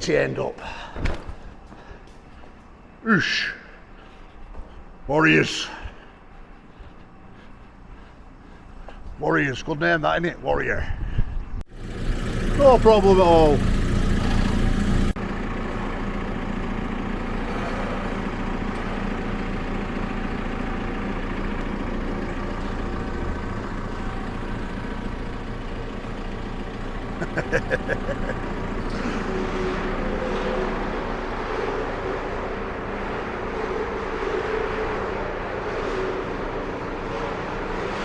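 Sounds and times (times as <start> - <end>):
diesel engine running: 11.7 - 38.0.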